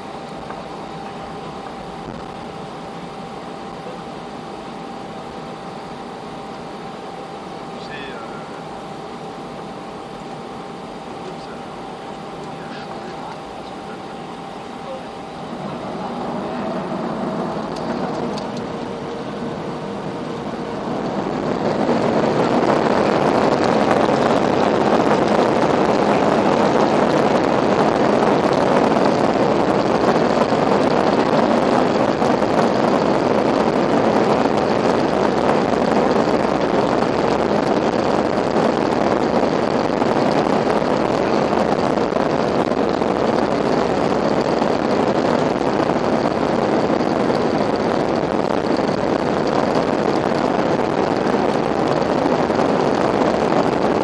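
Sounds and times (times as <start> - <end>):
jet engines roaring: 0.0 - 54.0.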